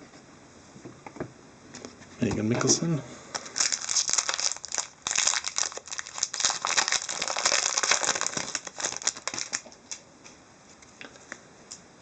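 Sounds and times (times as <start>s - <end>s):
foil wrapper crinkling: 3.3s - 10.1s.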